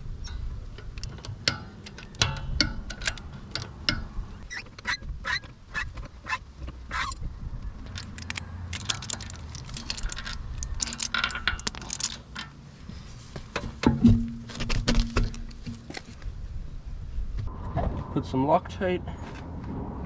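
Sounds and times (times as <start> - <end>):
small metal parts clinking: 7.8 - 12.6.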